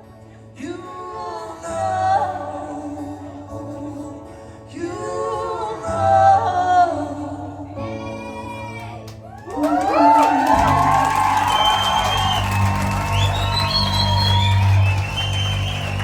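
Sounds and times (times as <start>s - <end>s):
crowd cheering: 9.3s - 16.0s.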